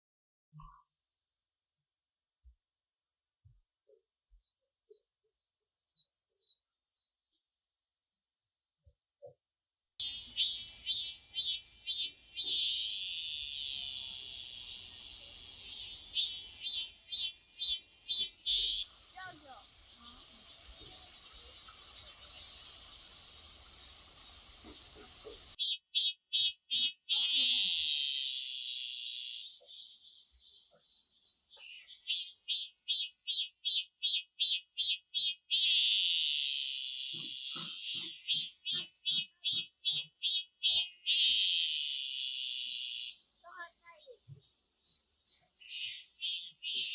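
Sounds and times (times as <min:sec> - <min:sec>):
cicada buzzing: 0:10.0 - 0:30.6, 0:31.9 - 0:43.6, 0:44.5 - 0:46.9.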